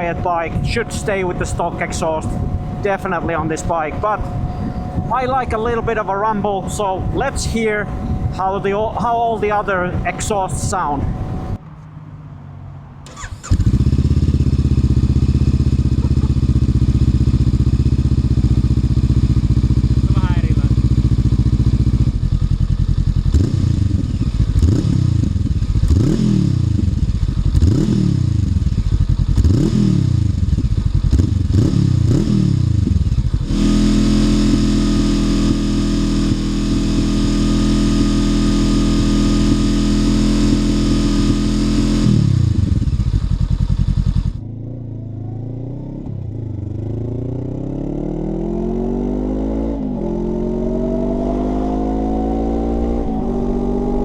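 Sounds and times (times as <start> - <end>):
motorcycle engine revving: 0.0 - 11.6, 13.0 - 54.0
motorcycle pulling away: 13.1 - 54.0.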